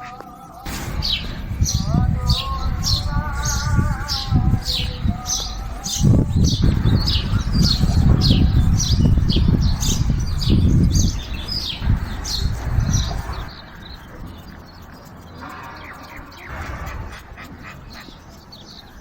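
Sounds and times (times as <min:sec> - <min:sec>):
small birds chirping: 0:00.0 - 0:19.0
heavy low rumble: 0:00.7 - 0:14.4.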